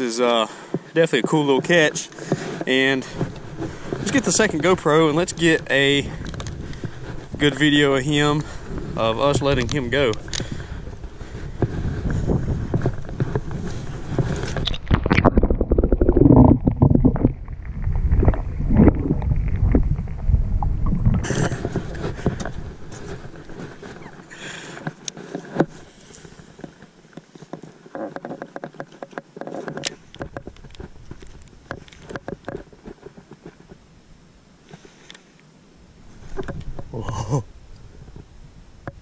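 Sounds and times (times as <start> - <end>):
low rumbling wind: 2.6 - 24.7, 35.8 - 39.0
scattered clicks and knocks: 24.7 - 33.8.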